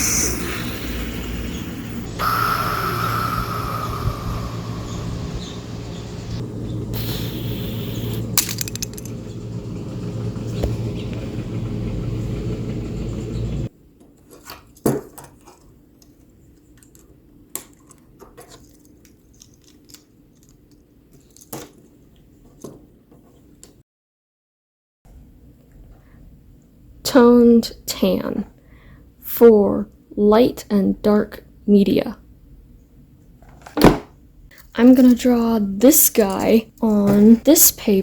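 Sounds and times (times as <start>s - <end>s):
loud rumble with low hum: 0.0s - 13.7s
clicks and clinks of small objects: 8.4s - 9.1s, 16.8s - 21.8s.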